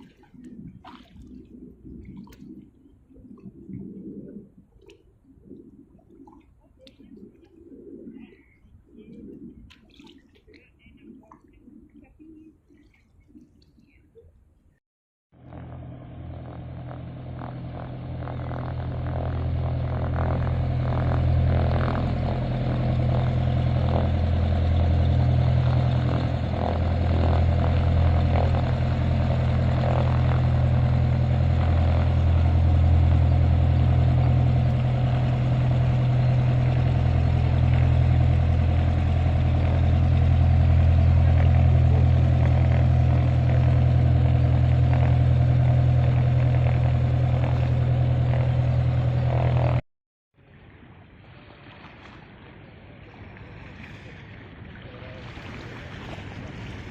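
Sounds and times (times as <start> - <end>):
engine droning: 15.4 - 49.8.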